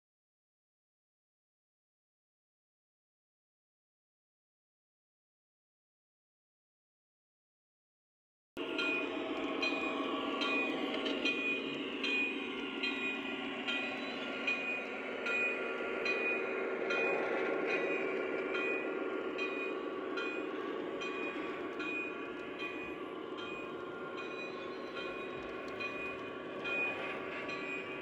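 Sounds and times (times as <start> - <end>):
model train rolling on track: 8.6 - 28.0.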